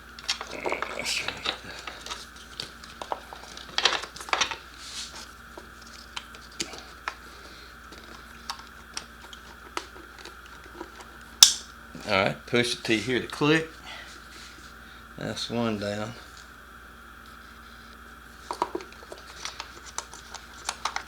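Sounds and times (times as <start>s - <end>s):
wiring rustling: 0.0s - 11.8s, 18.4s - 21.0s.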